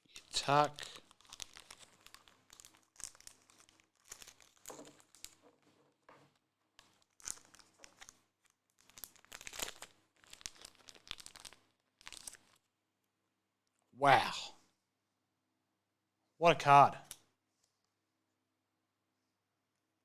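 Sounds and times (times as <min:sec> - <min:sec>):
plastic sleeve crinkling: 0:00.0 - 0:12.7.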